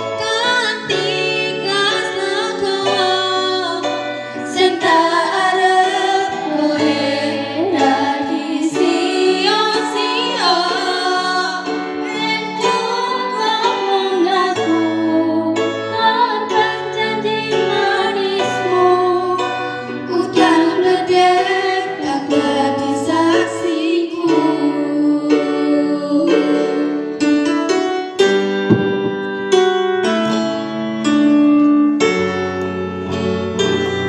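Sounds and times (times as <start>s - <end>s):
keyboard accompaniment: 0.0s - 34.0s
woman singing: 0.2s - 19.5s, 20.1s - 26.9s
low bass notes: 28.7s - 29.5s.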